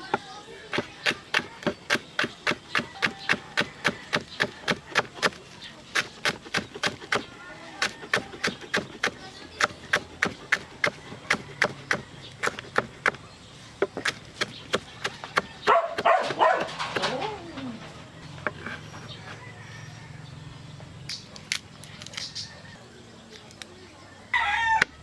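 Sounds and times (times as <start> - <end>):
knife chopping on cutting board: 0.0 - 13.2, 13.8 - 17.2.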